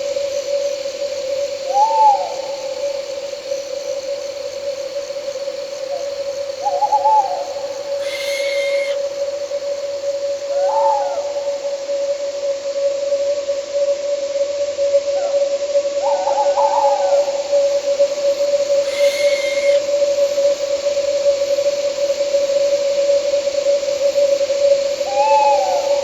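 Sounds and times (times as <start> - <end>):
owl hooting: 5.9 - 11.6, 16.1 - 20.3
brief harsh call: 8.0 - 9.0, 18.8 - 19.8.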